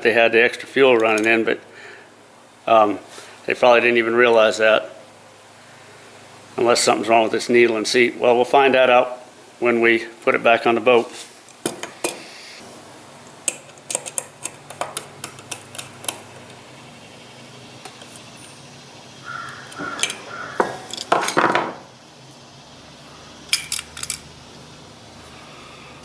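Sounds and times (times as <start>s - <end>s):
faint steady hum: 0.0s - 26.0s
metal parts and tools clinking: 19.7s - 21.7s, 23.5s - 24.3s.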